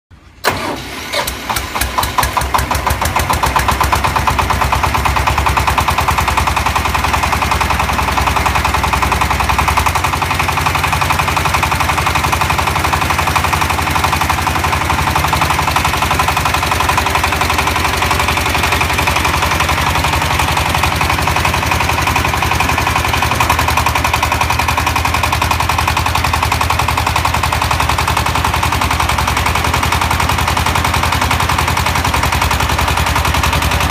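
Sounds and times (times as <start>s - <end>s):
truck engine running with clatter: 0.2s - 33.9s.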